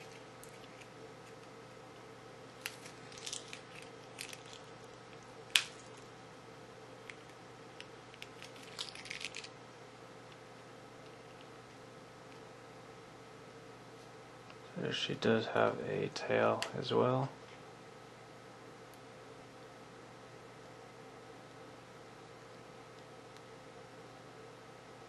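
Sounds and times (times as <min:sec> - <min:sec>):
faint steady hum: 0:00.0 - 0:25.0
plastic crinkling: 0:02.6 - 0:06.1, 0:08.1 - 0:09.5.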